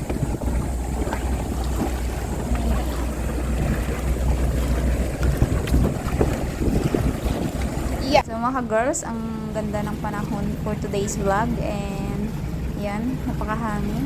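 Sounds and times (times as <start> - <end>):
wind on microphone: 0.0 - 8.3
boat engine droning: 0.0 - 14.0.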